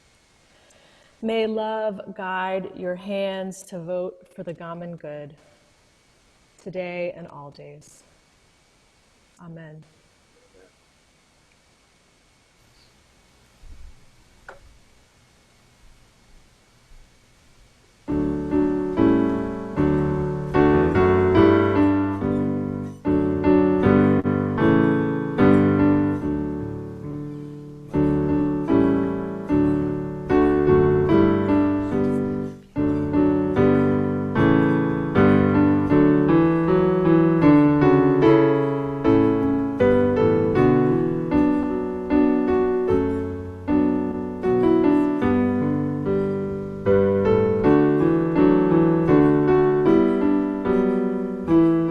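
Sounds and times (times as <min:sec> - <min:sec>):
slow solo piano piece: 0:18.1 - 0:51.9.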